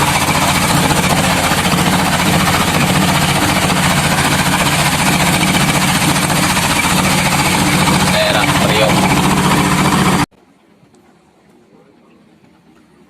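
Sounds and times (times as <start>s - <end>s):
small boat engine chugging: 0.0s - 10.3s.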